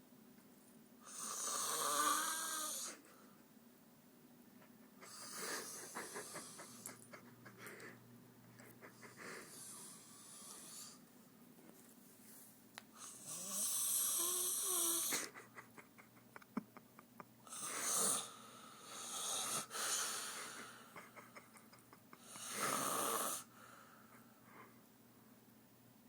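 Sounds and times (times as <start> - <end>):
woman snoring loudly: 1.0 - 3.0, 9.3 - 11.0, 13.0 - 15.3, 17.4 - 20.6, 22.2 - 23.5.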